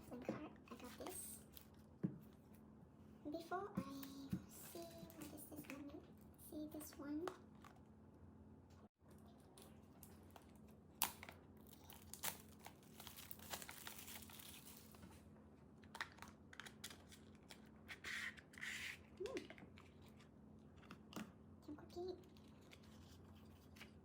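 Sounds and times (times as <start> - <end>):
packaging crinkling and tearing: 9.6 - 15.2, 15.8 - 18.6.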